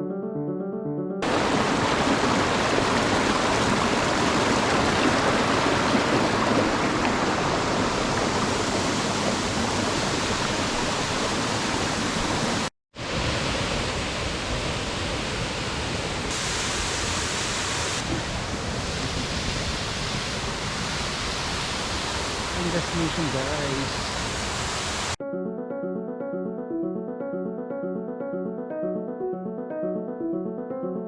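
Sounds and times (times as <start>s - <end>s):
waterfall rushing and splashing: 1.2s - 25.2s.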